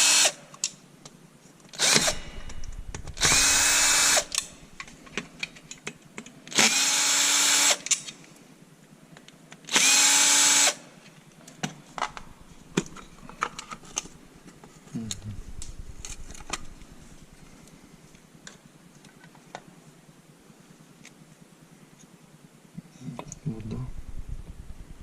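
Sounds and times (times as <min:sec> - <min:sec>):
power drill whine: 0:00.0 - 0:00.4, 0:01.8 - 0:04.8, 0:06.5 - 0:07.8, 0:09.7 - 0:10.8.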